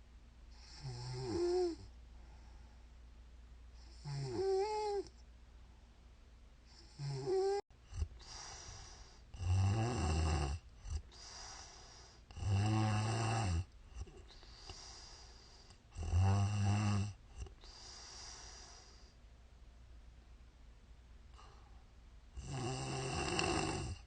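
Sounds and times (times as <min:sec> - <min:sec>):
soft breaths: 0:00.5 - 0:06.0, 0:06.6 - 0:09.4, 0:10.6 - 0:12.5, 0:13.6 - 0:16.0, 0:17.1 - 0:19.3, 0:21.3 - 0:22.0
woman snoring: 0:00.6 - 0:01.9, 0:03.8 - 0:05.1, 0:06.8 - 0:14.7, 0:15.9 - 0:18.9, 0:22.4 - 0:24.0.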